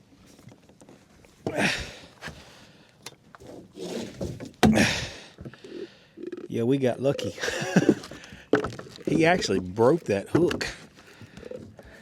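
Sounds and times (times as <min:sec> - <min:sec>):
knocks and thumps on a boat: 0:04.1 - 0:05.5.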